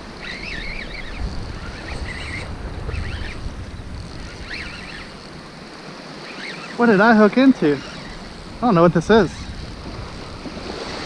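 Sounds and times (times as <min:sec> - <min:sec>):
wind buffeting microphone: 0:00.0 - 0:06.2, 0:07.3 - 0:11.0
surf washing: 0:00.0 - 0:11.0
high wavering chirps: 0:04.2 - 0:05.6.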